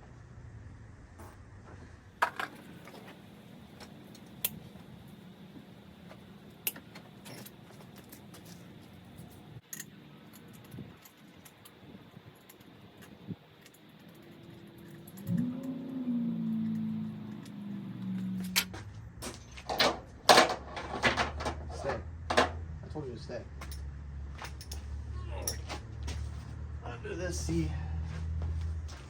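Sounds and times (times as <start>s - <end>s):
metal tools clinking: 7.2s - 15.8s, 23.6s - 25.8s.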